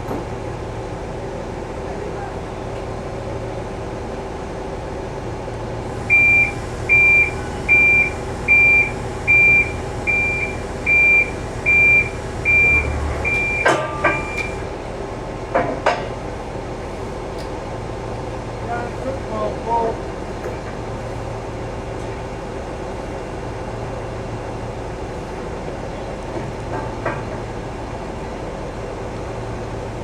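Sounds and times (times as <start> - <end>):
engine running steadily: 0.0 - 30.0
reversing alarm beeping: 6.1 - 14.7.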